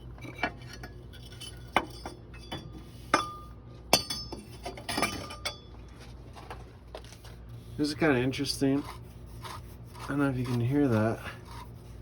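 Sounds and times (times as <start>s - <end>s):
metal tools clinking on metal: 0.2s - 5.7s.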